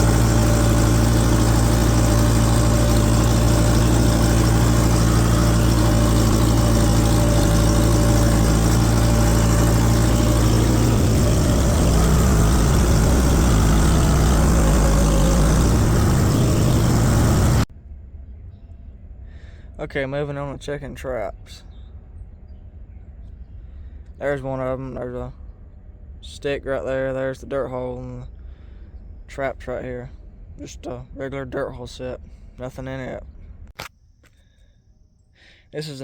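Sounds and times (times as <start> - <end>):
engine running: 0.0 - 17.7.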